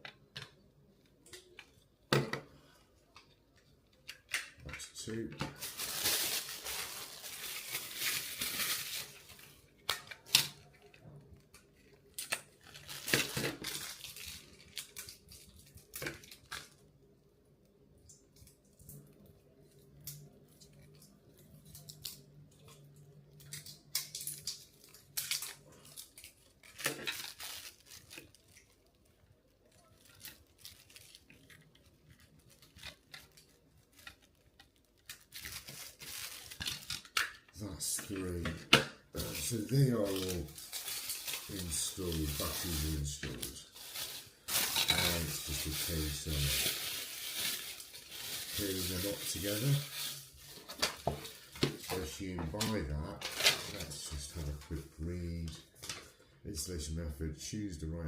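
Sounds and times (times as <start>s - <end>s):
packaging tearing and rustling: 5.1s - 16.8s, 23.4s - 38.4s, 39.2s - 54.6s.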